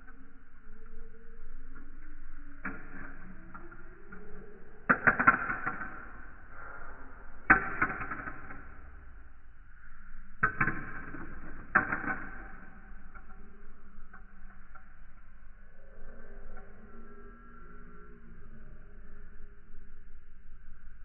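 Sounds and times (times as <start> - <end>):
marbles clacking in marble run: 0.8 - 9.3, 10.4 - 15.2.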